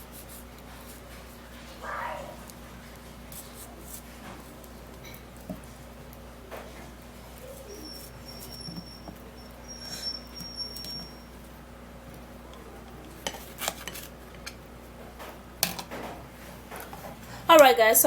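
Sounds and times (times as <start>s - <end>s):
thin high steady tone: 7.4s - 11.5s.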